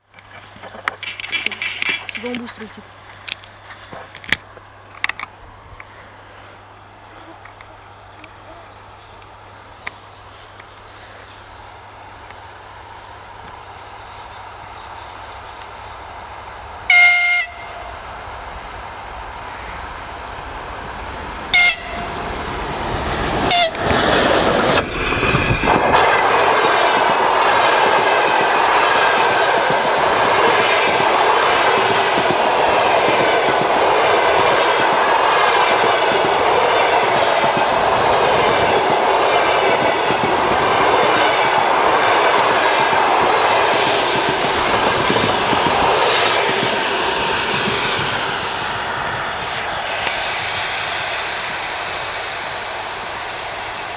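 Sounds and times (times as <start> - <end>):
train wheels clattering on rails: 0.0 - 6.1, 9.0 - 53.9
locomotive horn blasts: 16.9 - 18.0, 21.5 - 22.3, 23.5 - 23.9.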